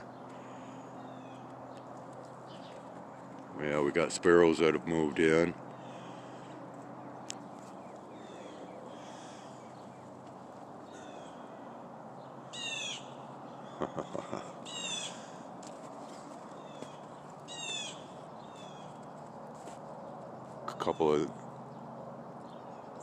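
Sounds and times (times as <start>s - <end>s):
faint bird chirping: 0.0s - 19.2s
songbird calls: 5.6s - 10.3s, 10.9s - 11.6s, 12.2s - 15.4s, 16.5s - 19.0s, 20.6s - 21.8s.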